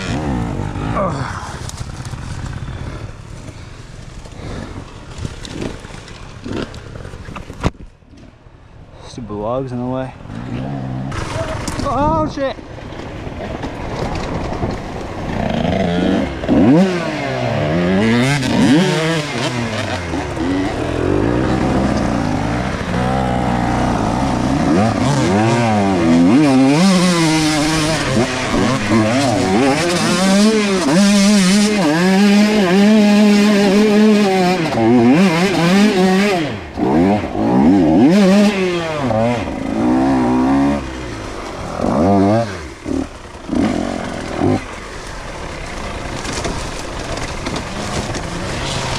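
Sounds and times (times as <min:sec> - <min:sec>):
dirt bike engine revving: 0:00.0 - 0:03.7, 0:13.4 - 0:48.9.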